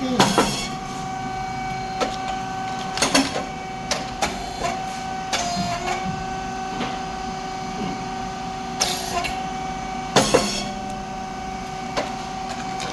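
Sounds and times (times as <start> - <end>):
machine mechanical hum: 0.0 - 12.9.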